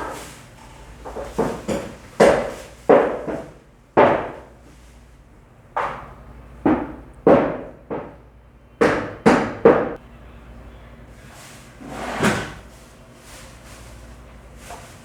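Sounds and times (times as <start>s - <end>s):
cleaver chopping meat on a block: 1.4s - 4.5s, 6.7s - 8.2s, 8.8s - 10.0s.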